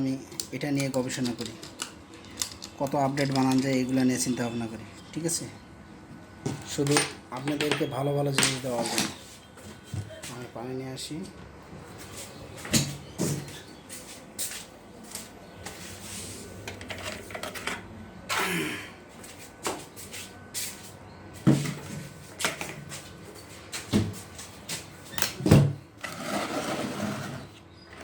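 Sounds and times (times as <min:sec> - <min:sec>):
objects knocking and clunking: 0:00.4 - 0:03.9, 0:16.6 - 0:18.4.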